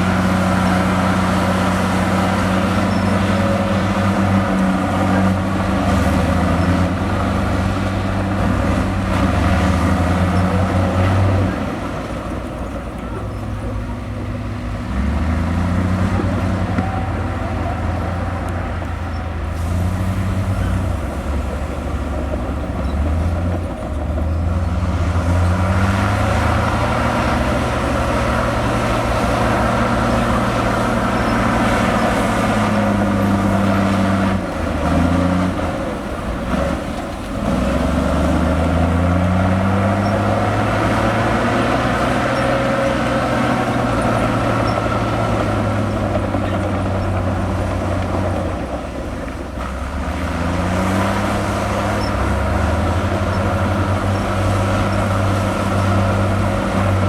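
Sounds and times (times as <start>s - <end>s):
heavy diesel engine running: 0.0s - 57.0s.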